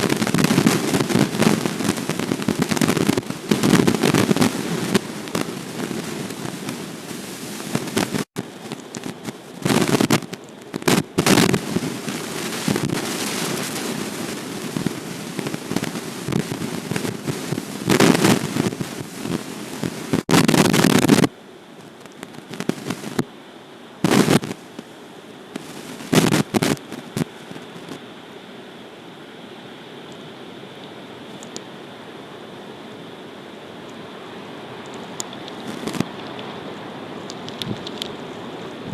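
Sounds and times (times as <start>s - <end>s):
wind buffeting microphone: 0.0s - 21.3s, 37.4s - 38.9s.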